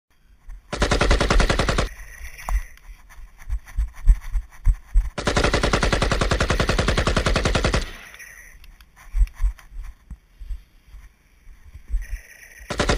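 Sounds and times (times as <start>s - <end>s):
automatic gunfire bursts: 0.7s - 2.0s, 5.2s - 8.2s, 12.7s - 12.9s.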